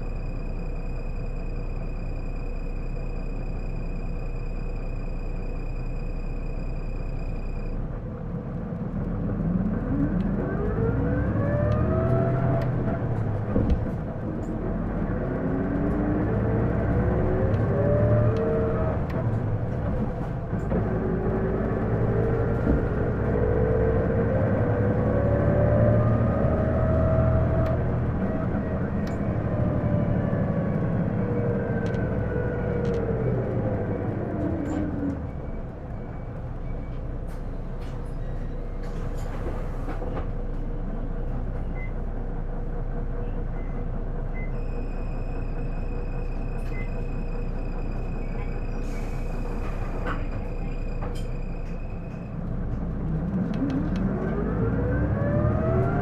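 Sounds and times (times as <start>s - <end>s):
rising transmission whine: 0.0s - 8.0s, 8.8s - 37.2s, 50.5s - 56.0s
low diesel bus rumble: 0.0s - 56.0s.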